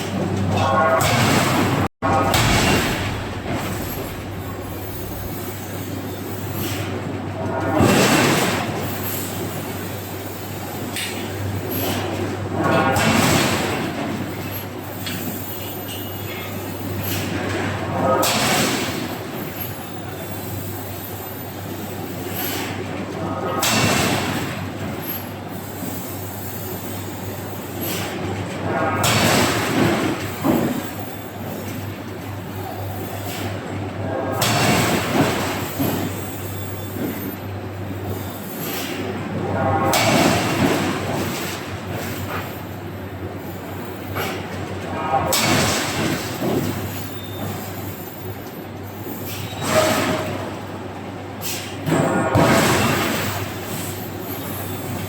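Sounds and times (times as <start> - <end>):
metallic rumbling: 0.7 - 6.2
machinery humming: 1.6 - 6.6.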